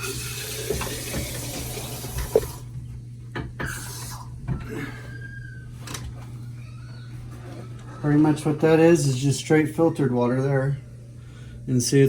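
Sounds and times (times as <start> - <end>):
water running from spigot: 0.0 - 2.7, 3.6 - 4.3
steady low hum: 0.0 - 12.0.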